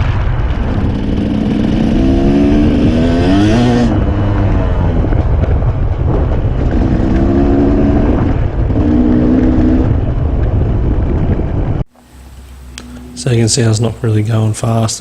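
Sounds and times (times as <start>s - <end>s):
motorcycle engine running: 0.0s - 11.8s.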